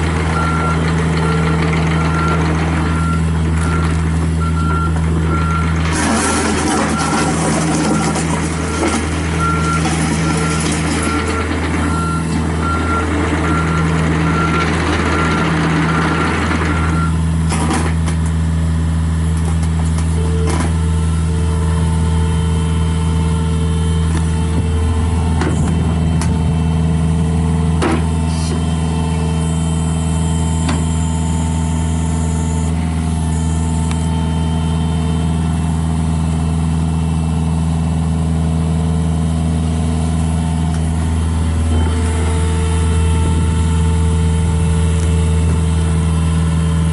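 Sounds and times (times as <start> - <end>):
excavator diesel engine running: 0.0 - 46.9
travel alarm beeping: 28.6 - 35.2.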